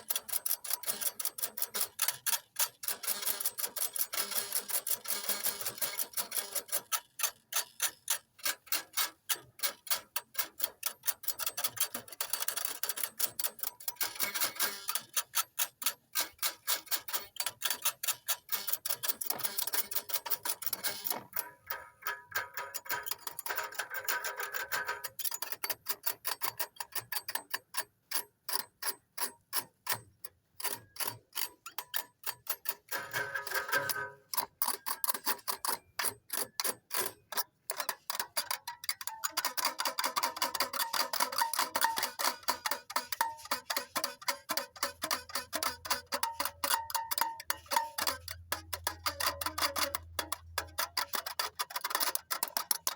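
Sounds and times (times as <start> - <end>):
rapid even clicking: 0.0 - 52.9.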